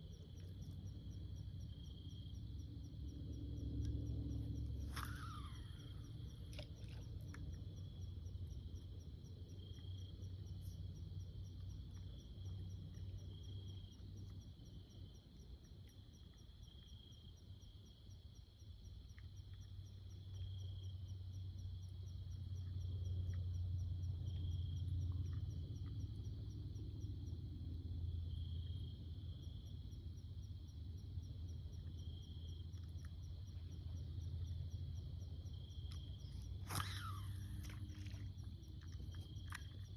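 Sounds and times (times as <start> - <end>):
high-pitched insect chorus: 0.0 - 15.3, 31.9 - 39.9.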